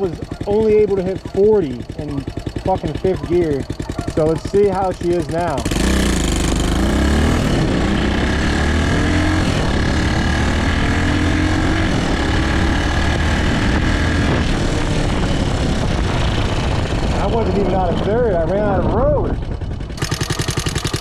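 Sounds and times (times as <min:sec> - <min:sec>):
motorcycle engine accelerating: 0:00.0 - 0:21.0
wind rushing over microphone: 0:05.6 - 0:20.0.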